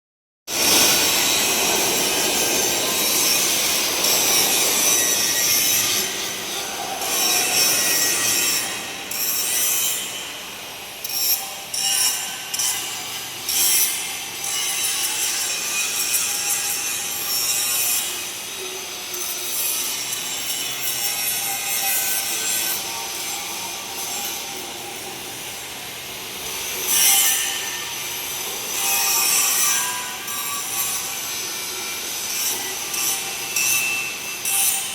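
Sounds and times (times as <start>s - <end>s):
angle grinder grinding metal: 0.5s - 34.9s.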